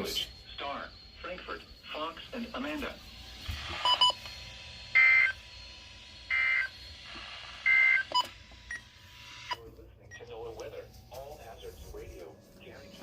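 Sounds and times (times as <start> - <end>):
two-tone digital data bursts: 0.0 - 10.2
short electronic beeps: 3.8 - 4.4, 5.0 - 5.4, 7.7 - 8.9.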